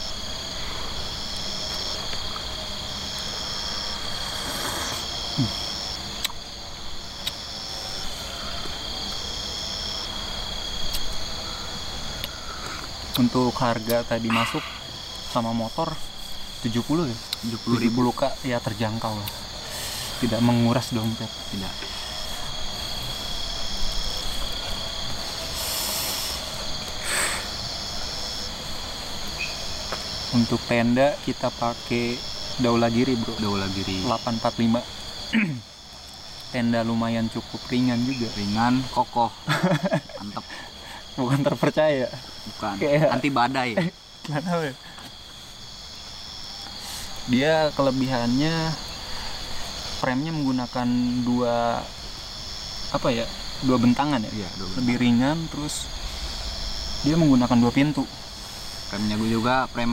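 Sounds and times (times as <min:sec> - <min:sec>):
insect singing in pulses: 0:00.0 - 0:36.6
insect trilling steadily: 0:00.0 - 0:59.9
short hissing noises: 0:04.0 - 0:06.4, 0:19.1 - 0:20.6, 0:24.2 - 0:27.7, 0:46.7 - 0:47.3, 0:58.1 - 0:59.4.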